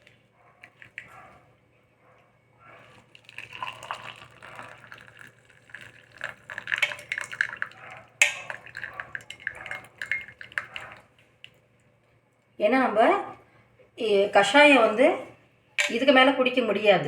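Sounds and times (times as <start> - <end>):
liquid pouring and dripping: 0.0 - 1.4, 2.8 - 11.9
metal utensils clinking: 6.5 - 11.0, 15.8 - 16.1.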